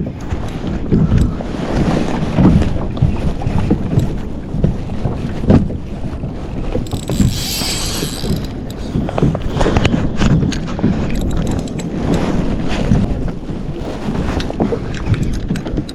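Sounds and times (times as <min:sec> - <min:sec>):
wind buffeting microphone: 0:00.0 - 0:15.9
water slopping against kayak hull: 0:00.2 - 0:12.2.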